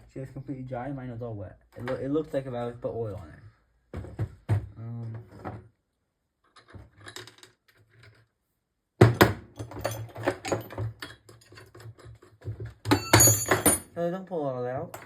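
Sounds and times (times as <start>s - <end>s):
metal tools clinking and rattling: 9.6s - 14.0s.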